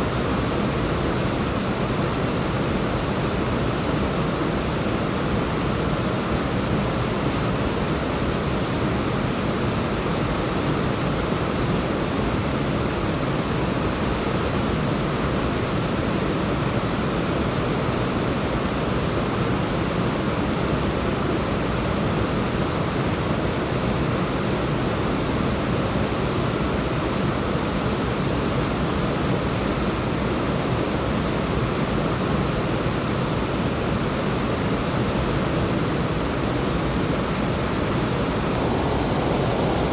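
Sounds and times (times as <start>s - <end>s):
waterfall rushing: 37.8s - 39.9s.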